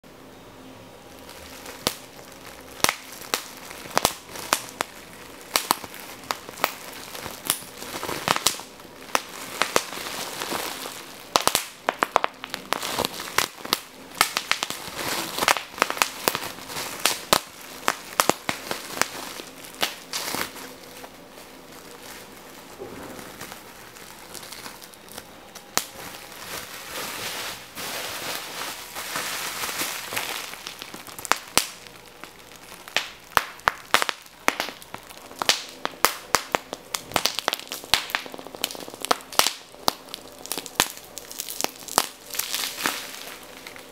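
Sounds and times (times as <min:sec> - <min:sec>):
fire crackles and pops: 0:01.1 - 0:43.9
fire hissing: 0:01.2 - 0:43.9.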